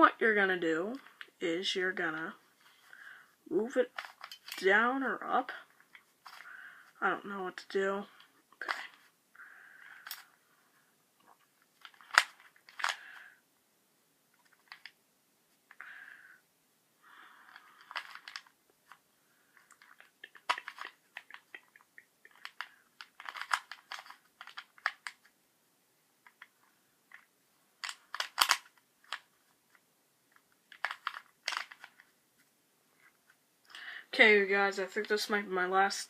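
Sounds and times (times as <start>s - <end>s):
plastic puzzle cube clicking: 9.8s - 10.3s, 11.8s - 13.1s, 14.4s - 15.0s, 17.5s - 19.0s, 19.6s - 25.3s, 26.2s - 32.1s.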